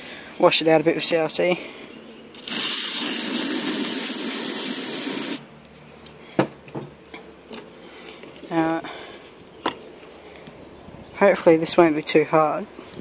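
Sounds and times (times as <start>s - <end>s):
aerosol spray hissing: 2.4s - 5.4s.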